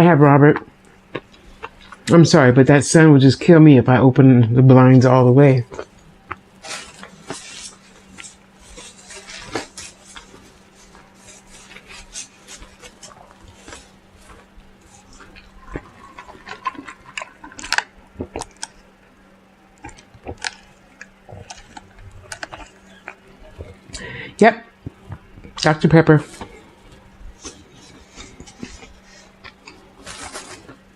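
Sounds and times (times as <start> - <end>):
crunchy chewing: 5.6 - 24.0, 26.3 - 30.9.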